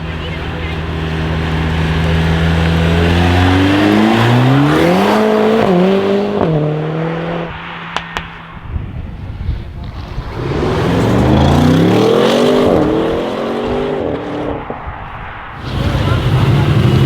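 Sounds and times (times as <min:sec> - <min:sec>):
car engine accelerating: 0:00.0 - 0:08.4, 0:09.6 - 0:17.0
exhaust cracks: 0:14.0 - 0:17.0.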